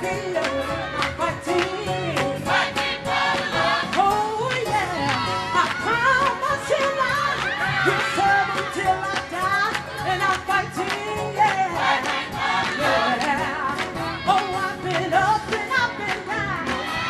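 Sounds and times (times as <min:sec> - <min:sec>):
band accompaniment with steady beat: 0:00.0 - 0:17.0
gospel choir singing: 0:00.0 - 0:17.0.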